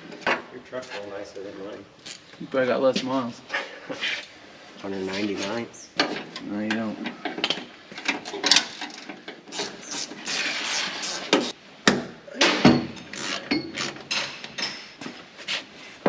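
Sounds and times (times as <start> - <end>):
rasping scrape: 9.6 - 11.6.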